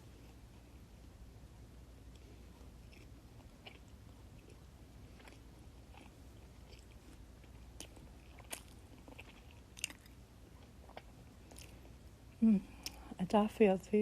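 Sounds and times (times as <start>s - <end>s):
low room hum: 0.0s - 14.0s
person chewing food: 2.0s - 12.1s.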